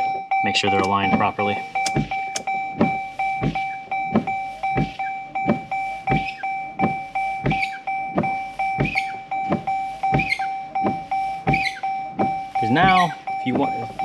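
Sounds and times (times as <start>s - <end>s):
windshield wipers sweeping: 0.8s - 13.1s
rubbery wiper squeak: 8.8s - 9.2s, 10.1s - 10.5s, 11.5s - 13.2s.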